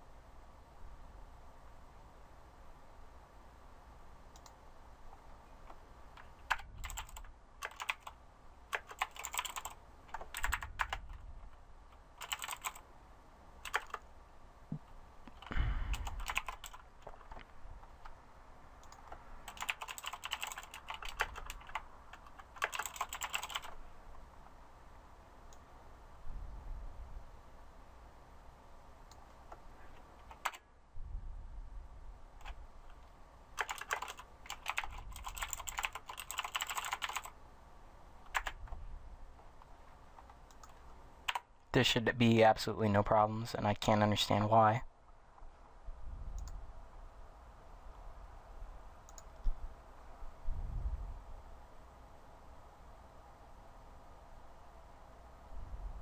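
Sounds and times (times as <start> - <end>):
typing on computer keyboard: 6.1 - 11.2, 12.2 - 12.8, 13.6 - 14.1, 15.3 - 17.5, 18.8 - 23.8, 30.2 - 30.6, 33.6 - 37.4, 38.3 - 38.6, 40.2 - 41.5.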